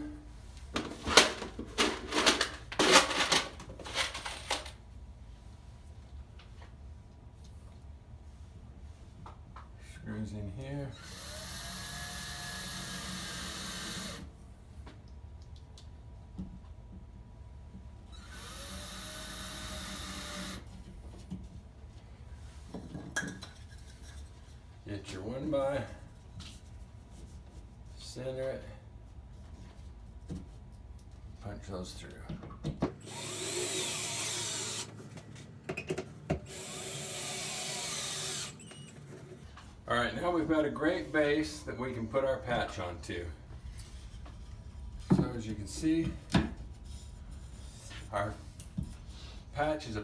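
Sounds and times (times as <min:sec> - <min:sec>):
electric drill spinning: 0:11.0 - 0:14.3, 0:18.2 - 0:20.7, 0:33.0 - 0:35.0, 0:36.5 - 0:38.9.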